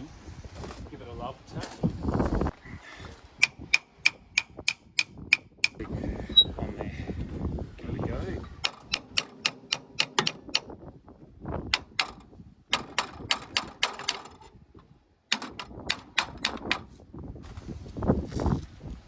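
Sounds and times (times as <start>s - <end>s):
metal-on-metal tool clicks: 3.4s - 5.8s, 8.6s - 10.8s.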